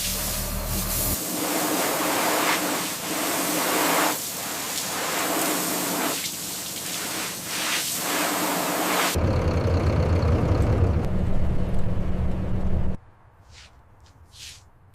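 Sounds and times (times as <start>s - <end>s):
water spraying on hard surface: 0.0s - 9.2s.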